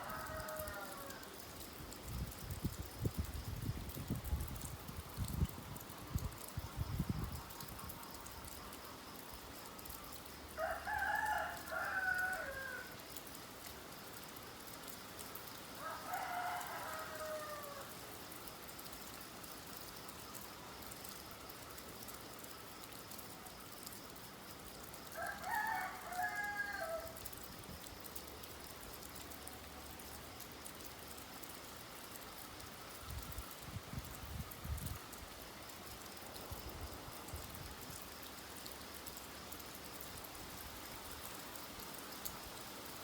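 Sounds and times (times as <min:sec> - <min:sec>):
rooster crowing: 0:00.0 - 0:01.3, 0:10.6 - 0:13.0, 0:15.8 - 0:17.9, 0:25.2 - 0:27.2
rain hissing: 0:00.0 - 0:43.0.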